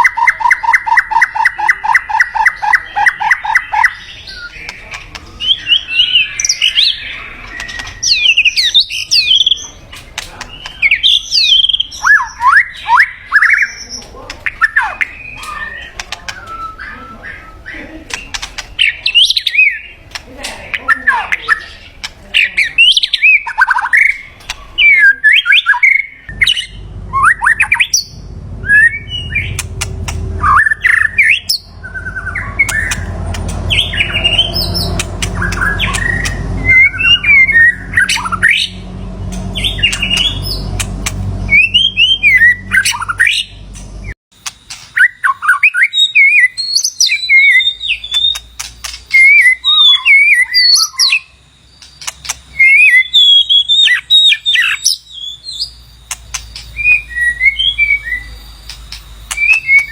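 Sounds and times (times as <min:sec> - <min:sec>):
bird singing whistled phrases: 0:10.7 - 0:20.0, 0:22.6 - 0:43.6, 0:44.9 - 0:59.9
low background rumble: 0:26.3 - 0:44.2.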